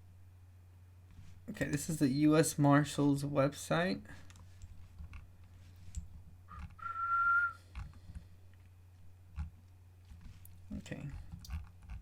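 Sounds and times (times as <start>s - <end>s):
short whistled note: 6.5s - 7.6s.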